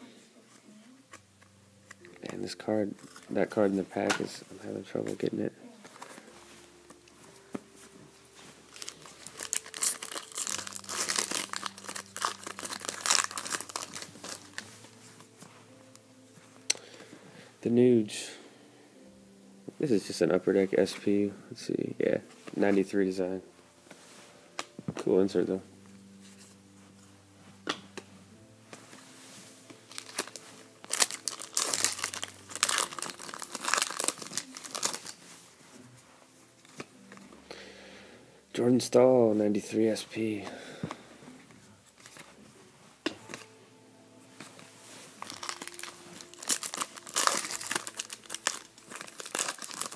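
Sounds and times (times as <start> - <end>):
wrapper crinkling and rustling: 1.1 - 7.7, 8.3 - 16.0, 28.7 - 35.6, 41.8 - 43.5, 44.4 - 49.9.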